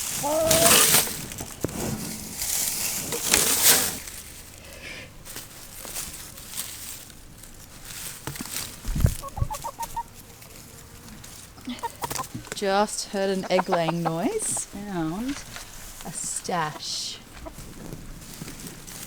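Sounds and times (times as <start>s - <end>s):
hens clucking: 0.0s - 1.6s, 7.9s - 18.2s
rustling: 0.0s - 19.0s.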